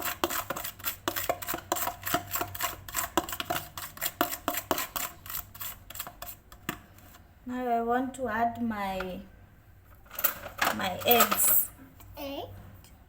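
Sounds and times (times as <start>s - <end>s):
utensil beating in mixing bowl: 0.0s - 7.2s.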